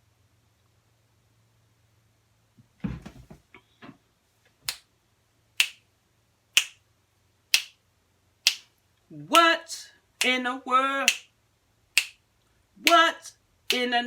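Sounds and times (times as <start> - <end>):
soft knocks and rustling: 2.6 - 4.6
finger snapping: 5.6 - 5.8, 6.6 - 6.8, 7.5 - 7.8, 11.1 - 11.3, 12.0 - 12.2.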